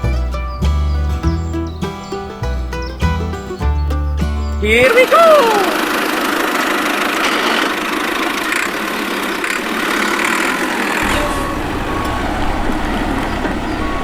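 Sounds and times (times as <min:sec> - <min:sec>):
small engine running: 0:04.1 - 0:14.0.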